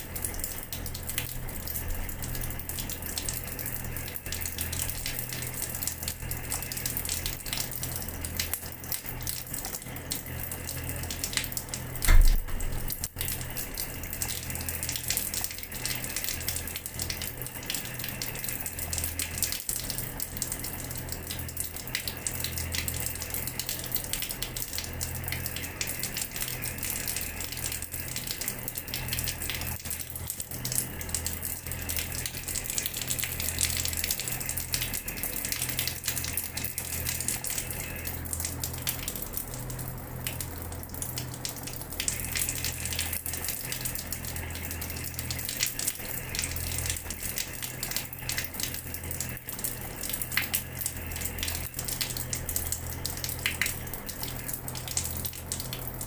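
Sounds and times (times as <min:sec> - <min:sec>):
tap water splashing on floor: 0:11.3 - 0:13.3.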